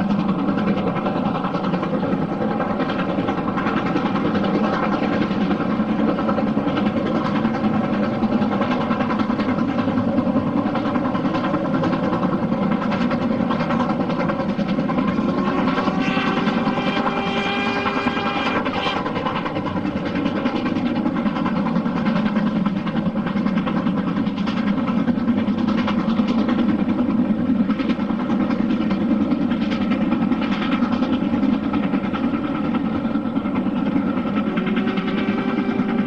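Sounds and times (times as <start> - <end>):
steam locomotive running: 0.0 - 36.0
held pitched tone: 15.0 - 19.3.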